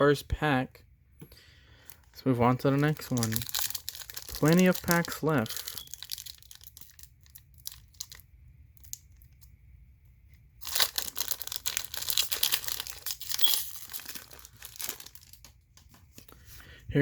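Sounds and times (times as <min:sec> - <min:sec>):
foil wrapper tearing and crinkling: 0:02.6 - 0:09.5, 0:10.6 - 0:15.6.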